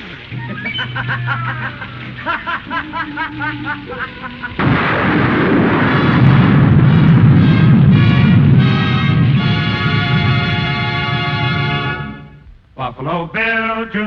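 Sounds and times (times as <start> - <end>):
loud blast with heavy rumble: 4.6 - 12.3.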